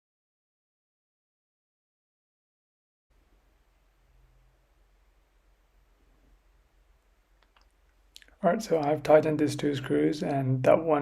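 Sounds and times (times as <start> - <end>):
low steady hum: 3.1 - 11.0.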